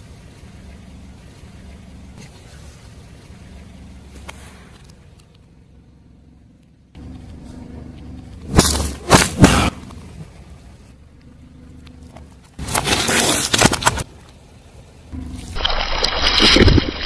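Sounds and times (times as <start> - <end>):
car engine running: 0.0 - 15.7
tyre crunching an object: 12.6 - 14.0.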